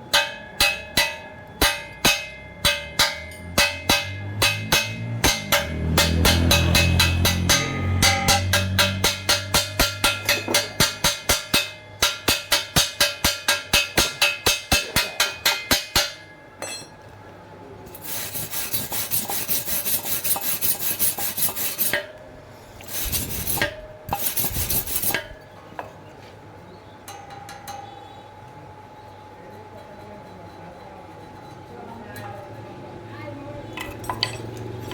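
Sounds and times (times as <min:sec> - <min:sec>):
tapping strikes on metal: 0:00.0 - 0:17.0, 0:17.9 - 0:22.2, 0:22.9 - 0:25.9, 0:27.0 - 0:28.0
rhythmic scraping strokes: 0:00.6 - 0:16.2, 0:17.9 - 0:25.4
harsh rasping: 0:17.9 - 0:22.1, 0:22.8 - 0:25.4.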